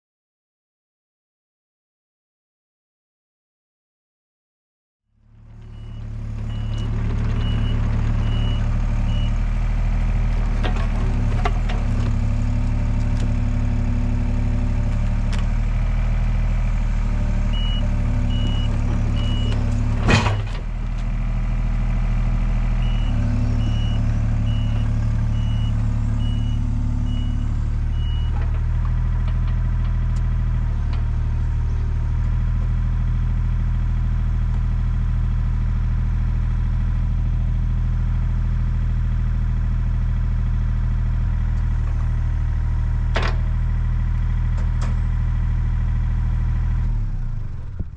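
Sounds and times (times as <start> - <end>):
excavator diesel engine running: 5.2 - 47.9
travel alarm beeping: 17.5 - 19.6, 22.8 - 28.4.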